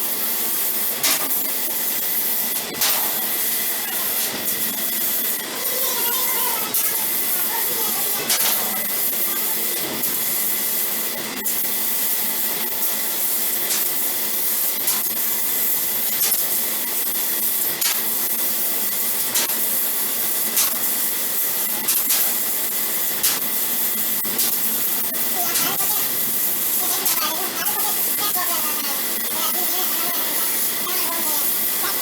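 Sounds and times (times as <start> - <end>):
laser cutter hiss: 0.0 - 32.0
short machine clicks: 21.9 - 22.4.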